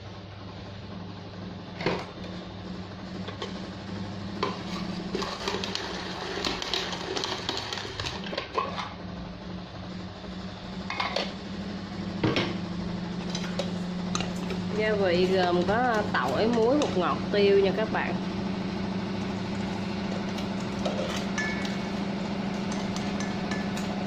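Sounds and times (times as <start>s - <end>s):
steady low hum: 8.2s - 24.0s
spoons clinking on dishes: 21.0s - 21.8s, 22.7s - 24.0s.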